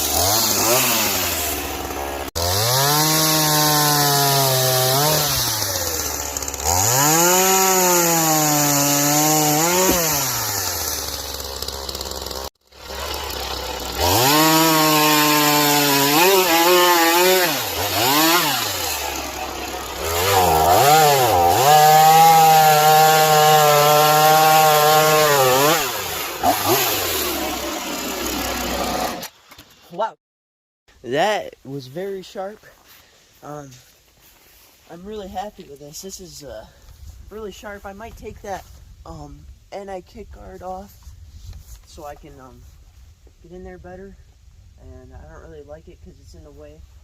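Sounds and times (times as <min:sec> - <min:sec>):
chainsaw revving through logs: 0:00.0 - 0:29.4.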